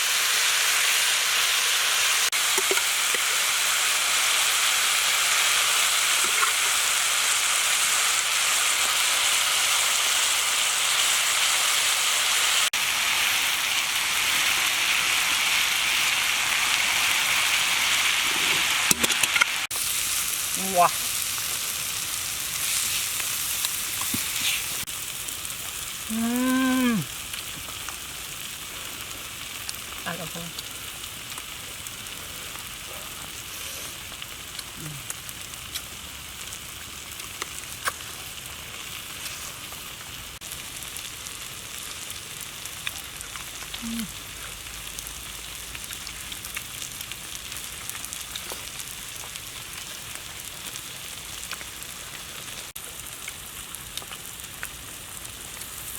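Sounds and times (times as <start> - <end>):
food sizzling in hot oil: 0.0 - 55.9
person exclaiming: 20.6 - 21.0, 26.1 - 27.1, 34.8 - 35.0, 43.8 - 44.2.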